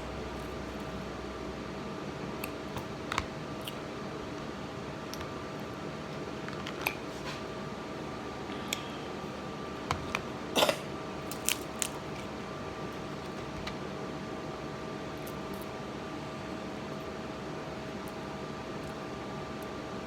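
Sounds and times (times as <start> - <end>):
steady hum: 0.0 - 20.0.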